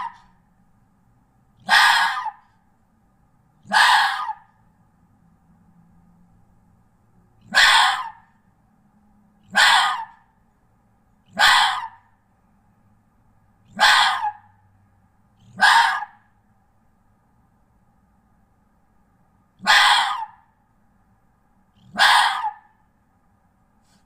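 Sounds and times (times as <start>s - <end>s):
red fox harsh rasping cries: 0.0s - 0.3s, 1.6s - 2.5s, 3.6s - 4.6s, 7.4s - 8.3s, 9.4s - 10.3s, 11.3s - 12.1s, 13.7s - 14.6s, 15.4s - 16.3s, 19.6s - 20.5s, 21.8s - 22.8s.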